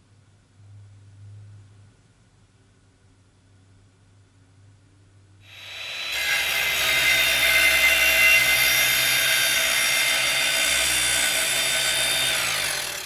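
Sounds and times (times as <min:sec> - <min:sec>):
power tool motor whirring: 0:05.5 - 0:13.0.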